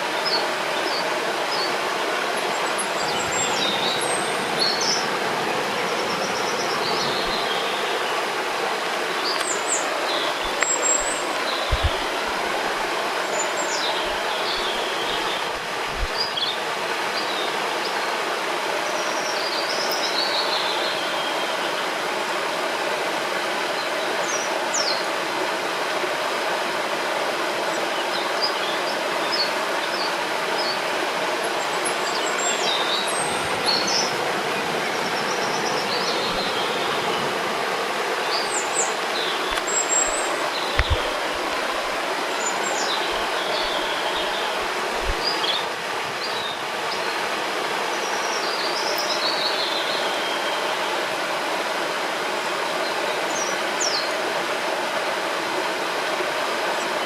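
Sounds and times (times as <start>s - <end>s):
rushing river water: 0.0s - 57.0s
small birds chirping: 9.2s - 16.6s, 34.8s - 47.1s.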